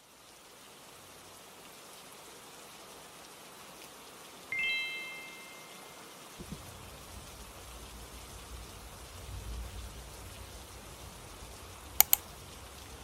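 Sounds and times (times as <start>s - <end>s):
steady rain: 0.0s - 13.0s
timer chime: 4.5s - 6.1s.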